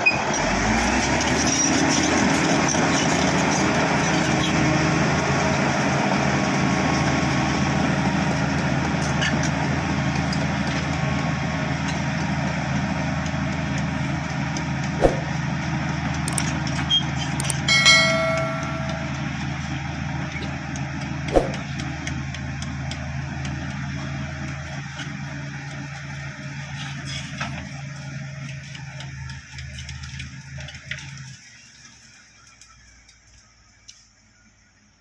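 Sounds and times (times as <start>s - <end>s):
bulldozer diesel engine running: 0.0s - 32.6s
sharp clicks: 16.2s - 16.6s
brief high-pitched tone: 17.7s - 19.3s.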